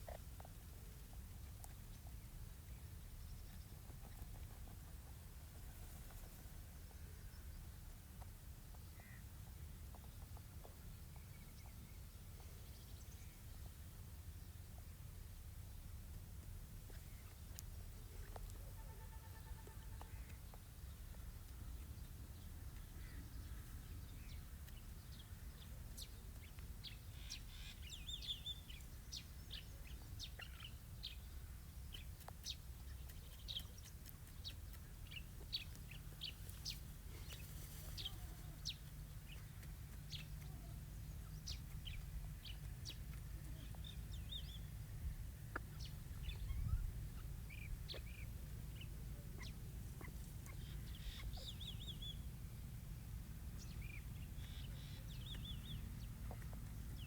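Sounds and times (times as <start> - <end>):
young bird chirping: 26.0 - 31.2, 31.9 - 44.7, 45.5 - 52.2, 53.6 - 57.0.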